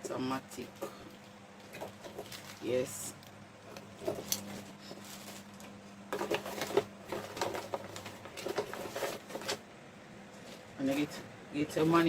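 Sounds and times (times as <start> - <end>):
faint steady hum: 0.0 - 12.0
packaging clicks and rustles: 0.6 - 2.8, 3.7 - 9.6.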